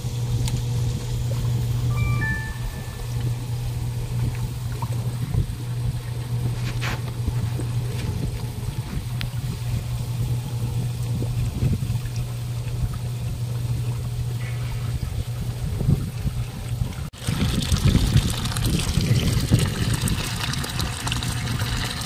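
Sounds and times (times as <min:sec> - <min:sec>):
steady low hum: 0:00.0 - 0:17.1
water trickling and splashing: 0:04.2 - 0:22.0.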